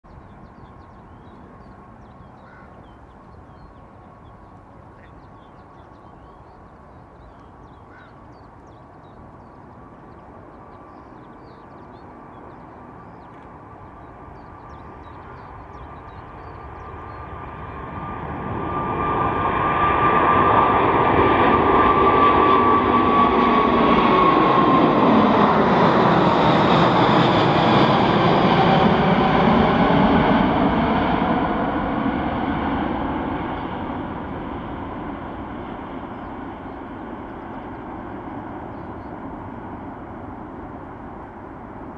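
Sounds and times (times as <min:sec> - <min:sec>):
jet engines roaring and whining: 0:09.0 - 0:41.9.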